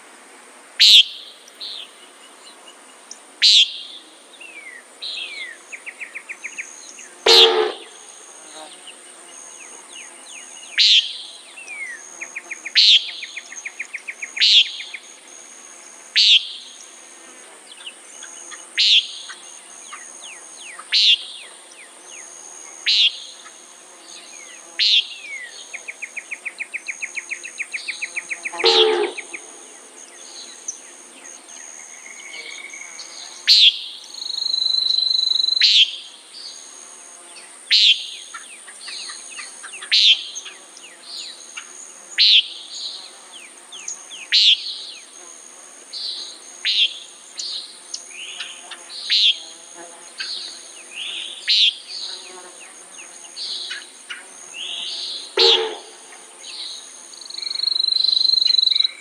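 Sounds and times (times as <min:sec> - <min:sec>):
high insect drone: 0:00.0 - 0:59.0
nighthawk calling: 0:07.3 - 0:08.0, 0:28.4 - 0:29.8, 0:55.3 - 0:56.2
faint bird chirps: 0:24.8 - 0:35.9.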